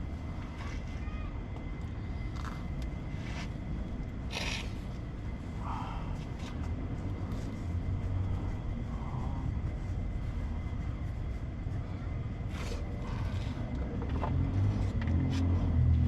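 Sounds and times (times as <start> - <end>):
motor vehicle rumble: 0.0 - 16.0.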